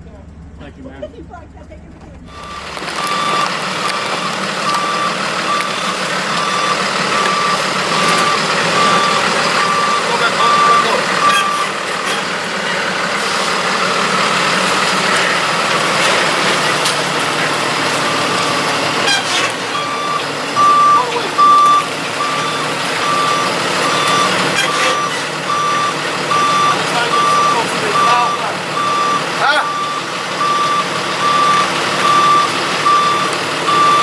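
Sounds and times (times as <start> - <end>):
truck engine running: 0.0 - 34.0
backup alarm beeping: 2.3 - 12.3, 17.0 - 34.0.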